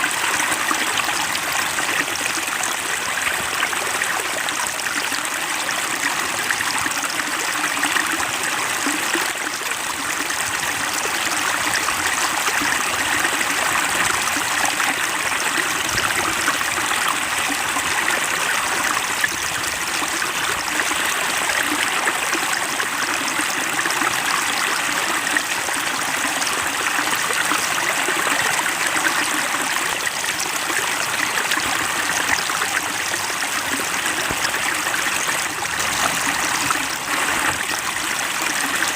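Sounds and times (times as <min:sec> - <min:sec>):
water flowing over rocks: 0:00.0 - 0:38.9.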